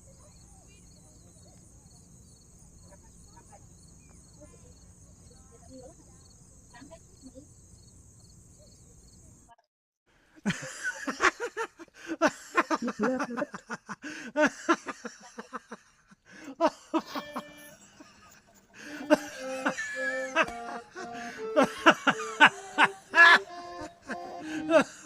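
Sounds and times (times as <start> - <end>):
melody of held notes over a beat: 18.9 - 24.8
choppy short notes: 18.9 - 25.0.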